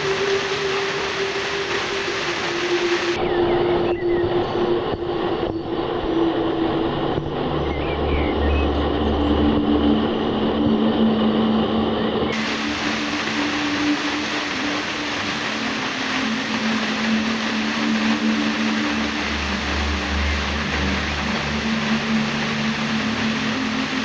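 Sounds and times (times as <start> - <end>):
waterfall rushing: 0.0 - 3.2, 12.2 - 24.0.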